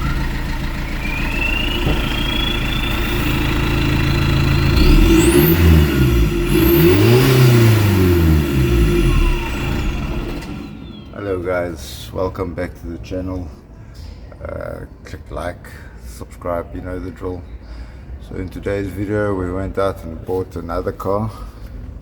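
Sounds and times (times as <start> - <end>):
car engine revving: 0.0 - 11.5.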